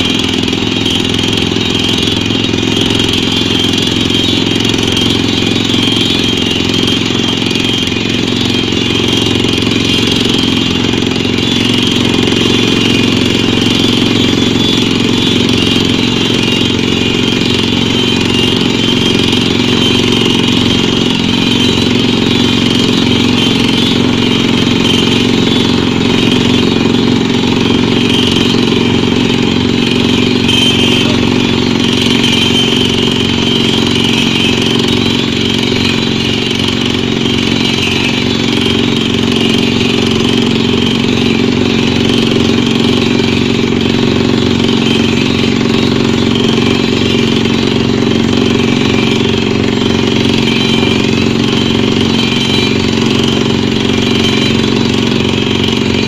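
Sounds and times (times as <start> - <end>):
pneumatic drilling rig drone: 0.0 - 56.0.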